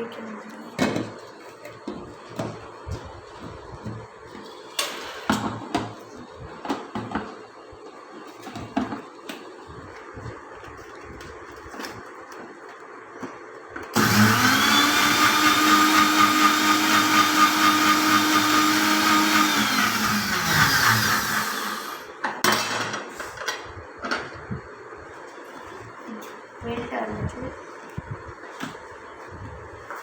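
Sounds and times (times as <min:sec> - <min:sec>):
electric blender whining: 0:13.9 - 0:22.2.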